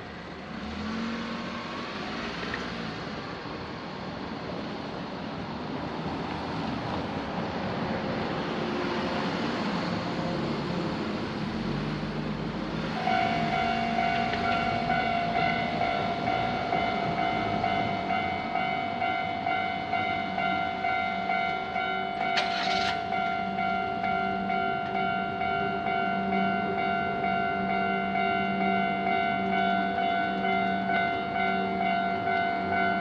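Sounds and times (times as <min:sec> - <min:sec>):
level crossing warning bell: 0:12.8 - 0:33.0.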